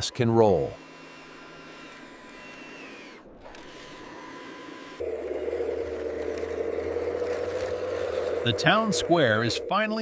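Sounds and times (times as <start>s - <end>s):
mechanical whirring: 0.0s - 10.0s
low engine drone: 4.2s - 10.0s.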